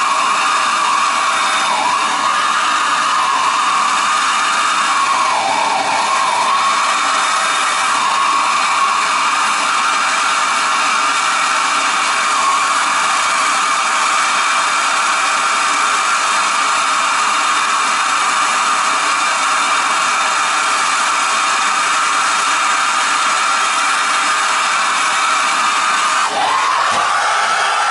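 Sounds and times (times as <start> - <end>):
torch flame hissing: 25.7 - 27.9.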